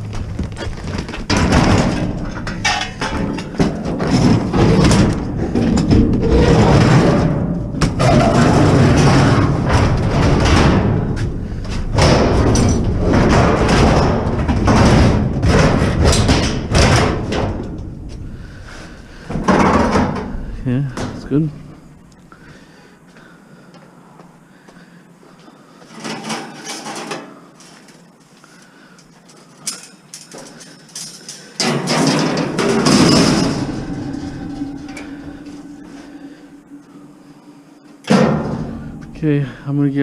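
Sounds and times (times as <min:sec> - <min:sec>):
scrap metal banging and clattering: 0:00.0 - 0:22.0, 0:25.8 - 0:27.9, 0:29.4 - 0:39.6
metal scraping: 0:00.0 - 0:22.1, 0:29.8 - 0:39.6.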